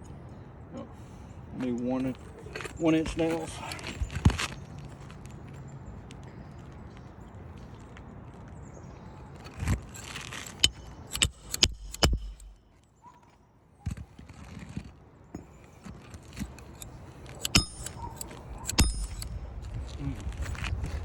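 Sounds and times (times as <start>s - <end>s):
loose nails jingling: 9.4s - 12.8s, 15.4s - 19.8s
sharp hammer knocks: 10.6s - 12.6s, 17.4s - 18.1s, 18.7s - 19.3s.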